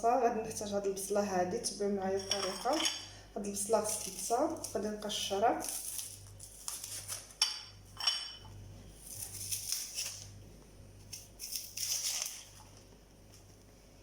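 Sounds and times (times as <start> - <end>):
onion skin crackling and rustling: 3.4 - 7.5, 8.6 - 13.7.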